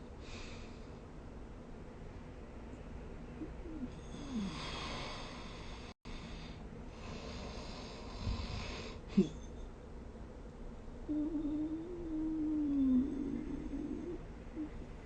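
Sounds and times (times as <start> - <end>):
person snoring: 3.6 - 5.9, 11.1 - 14.7.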